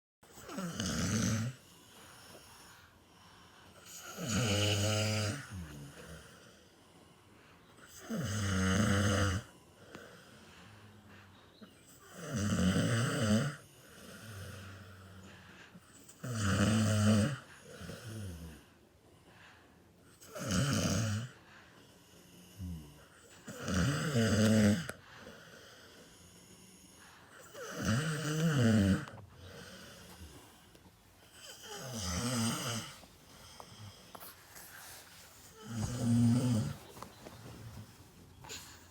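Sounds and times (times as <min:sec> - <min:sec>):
person snoring: 0:00.3 - 0:02.7, 0:03.8 - 0:06.6, 0:12.0 - 0:15.2, 0:25.6 - 0:30.6, 0:31.3 - 0:37.1
soft breaths: 0:01.2 - 0:08.2, 0:09.4 - 0:12.2, 0:13.6 - 0:16.2, 0:17.4 - 0:20.2, 0:21.3 - 0:23.6, 0:24.9 - 0:27.9, 0:28.5 - 0:38.9.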